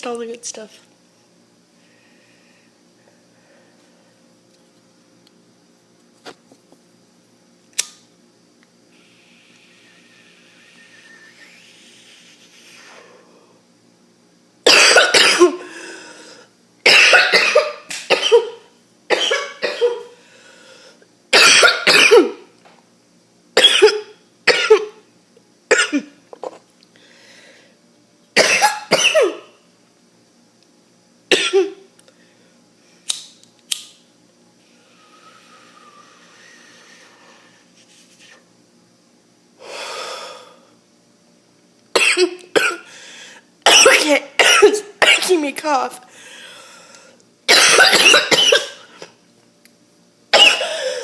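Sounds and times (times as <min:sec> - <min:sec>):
person coughing harshly: 0:14.6 - 0:16.0, 0:16.8 - 0:20.2, 0:21.3 - 0:22.5, 0:23.6 - 0:25.0, 0:25.7 - 0:26.6, 0:28.4 - 0:29.6, 0:31.3 - 0:31.9, 0:41.9 - 0:42.9, 0:43.6 - 0:45.4, 0:47.5 - 0:49.2, 0:50.3 - 0:51.0.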